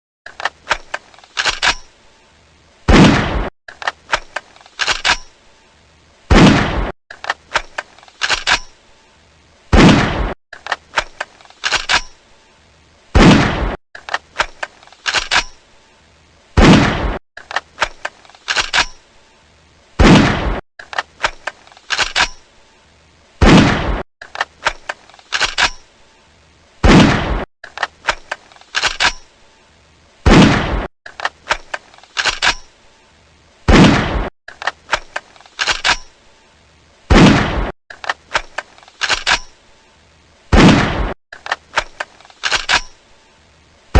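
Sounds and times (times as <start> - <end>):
pistol slide racking: 0.3 - 1.9, 3.7 - 5.4, 7.1 - 8.8, 10.6 - 12.2, 14.0 - 15.6, 17.4 - 19.0, 20.8 - 22.4, 24.2 - 25.9, 27.6 - 29.3, 31.1 - 32.7, 34.5 - 36.2, 37.9 - 39.6, 41.3 - 43.1
metallic clicks: 0.3 - 2.1, 3.7 - 5.5, 7.1 - 8.9, 10.5 - 12.4, 14.0 - 15.7, 17.4 - 19.2, 20.8 - 22.7, 24.2 - 26.1, 27.6 - 29.5, 31.1 - 33.0, 34.5 - 36.3, 37.9 - 39.8, 41.3 - 43.3
gunshot with ring-out: 2.9 - 3.5, 6.3 - 6.9, 9.7 - 10.4, 13.2 - 13.8, 16.6 - 17.2, 20.0 - 20.6, 23.4 - 24.0, 26.8 - 27.5, 30.3 - 30.9, 33.7 - 34.3, 37.1 - 37.7, 40.5 - 41.2.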